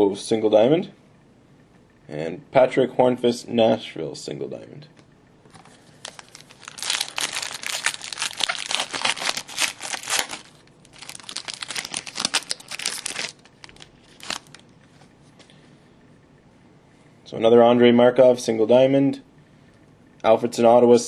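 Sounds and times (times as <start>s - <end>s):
wrapper rustling: 5.5s - 14.7s
foil wrapper crinkling and tearing: 6.0s - 14.6s.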